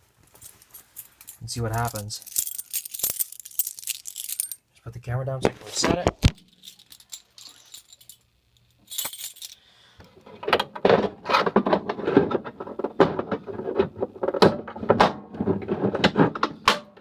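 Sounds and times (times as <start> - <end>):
keys jangling and clicking: 0.3 - 4.6, 6.4 - 9.6.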